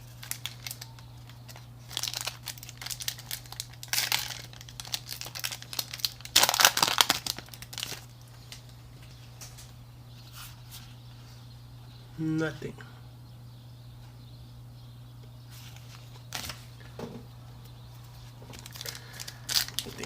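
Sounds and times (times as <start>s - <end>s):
foil wrapper crinkling and tearing: 0.0s - 8.7s, 18.5s - 20.0s.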